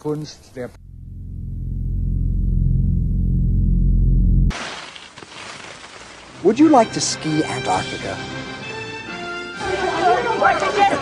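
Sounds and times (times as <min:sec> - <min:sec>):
deep musical drone: 0:00.8 - 0:04.5.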